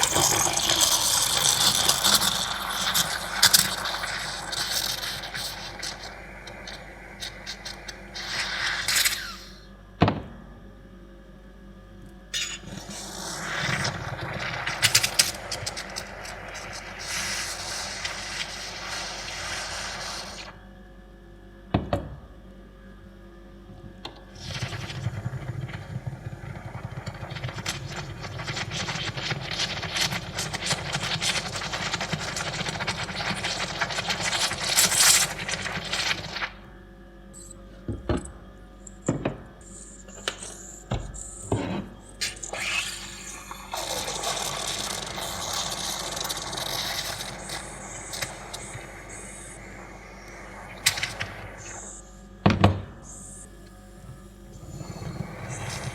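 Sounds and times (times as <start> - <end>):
steam wand hissing: 0.0 - 9.7, 12.4 - 20.6, 42.2 - 52.3, 53.0 - 55.9.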